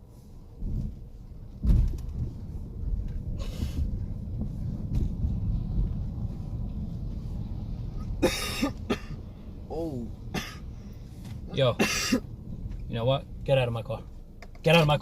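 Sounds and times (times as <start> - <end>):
car driving rumble inside cabin: 0.0 - 15.0
loud thump: 1.6 - 2.3.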